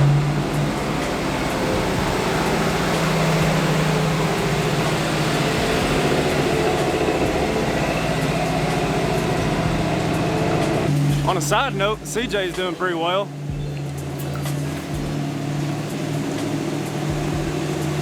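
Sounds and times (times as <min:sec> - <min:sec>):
car engine droning while driving: 0:00.0 - 0:18.0.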